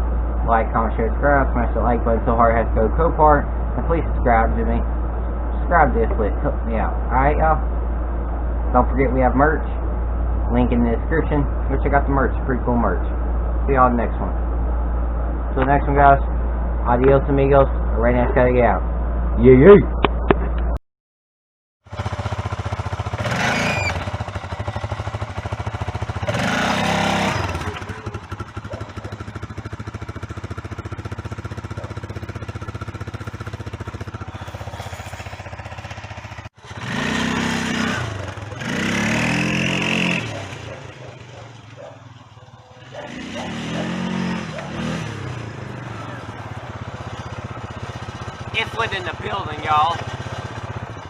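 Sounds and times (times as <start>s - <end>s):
small engine idling and revving: 21.8s - 51.0s.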